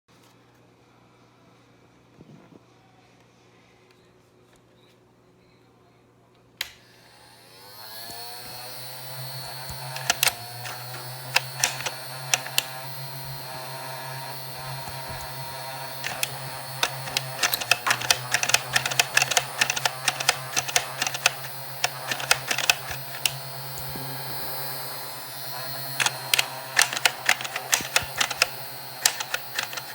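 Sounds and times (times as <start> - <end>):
toy blaster shots clicking: 9.4 - 23.5, 25.6 - 29.9.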